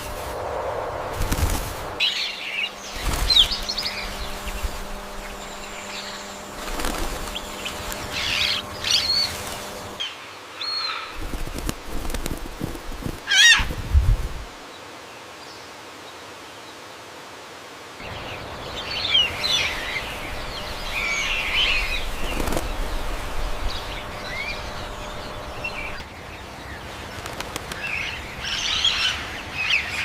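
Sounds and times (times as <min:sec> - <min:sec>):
wing flaps and rustling: 0:00.0 - 0:10.0, 0:11.1 - 0:14.6, 0:18.0 - 0:26.1, 0:27.0 - 0:28.2
peafowl calling: 0:02.0 - 0:10.1, 0:13.2 - 0:13.8, 0:18.0 - 0:26.0.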